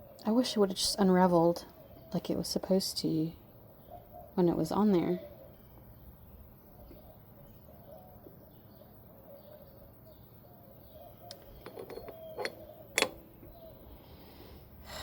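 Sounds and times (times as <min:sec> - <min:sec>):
metal tools clinking: 0:11.6 - 0:13.2.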